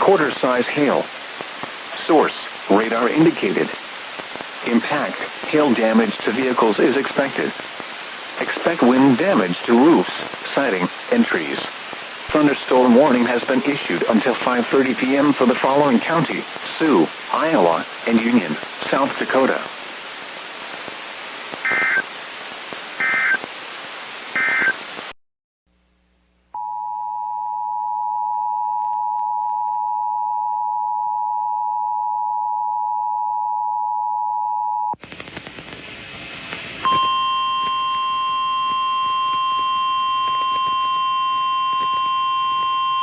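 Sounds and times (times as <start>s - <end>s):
radio static: 0.0s - 25.1s
data bursts: 21.6s - 22.1s, 23.0s - 23.5s, 24.4s - 24.8s
two-tone attention signal: 24.4s - 24.8s, 36.9s - 43.0s.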